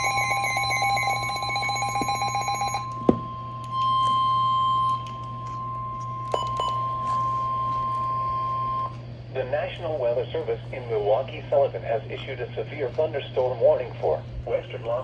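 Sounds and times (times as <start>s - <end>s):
steady alarm tone: 0.0s - 9.0s.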